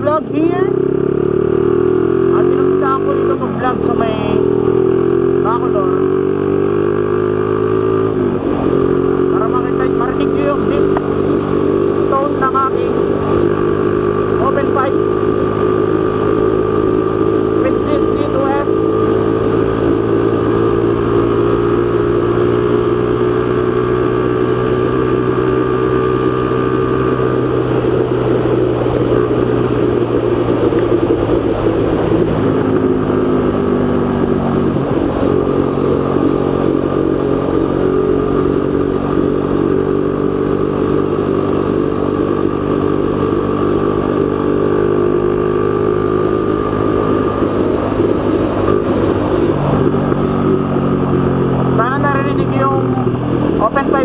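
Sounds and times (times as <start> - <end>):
motorcycle engine running: 0.0 - 54.0.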